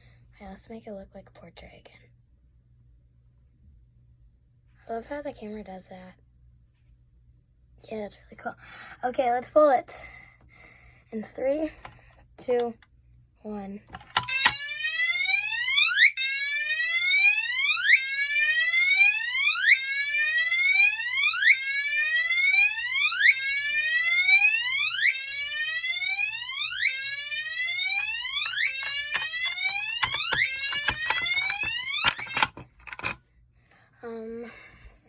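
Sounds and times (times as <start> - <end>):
sharp clicks: 13.9 - 14.6, 27.9 - 33.2
fire alarm horn whooping: 14.2 - 32.6.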